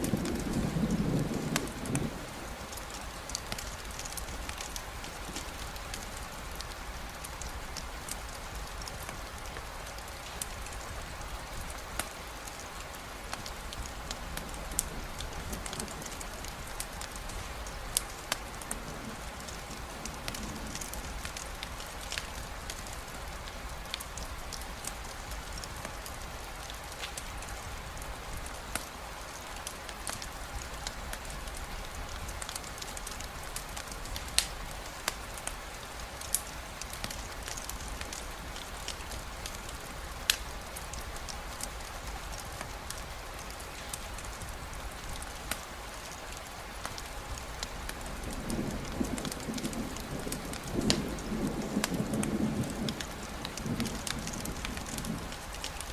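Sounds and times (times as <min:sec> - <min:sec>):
crackling campfire pops: 0:00.0 - 0:10.8, 0:29.6 - 0:35.6, 0:36.2 - 0:55.9
steady rainfall hiss: 0:00.0 - 0:55.9.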